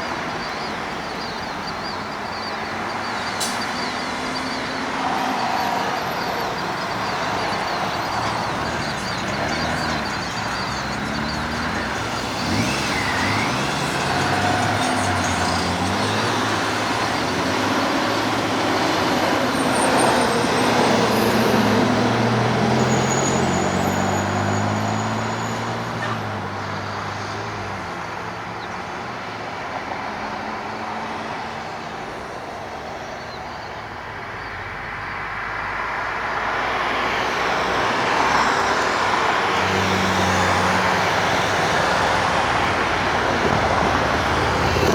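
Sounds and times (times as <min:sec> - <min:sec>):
passing road traffic: 0:00.0 - 0:44.9
turboprop engines during takeoff: 0:00.2 - 0:22.4.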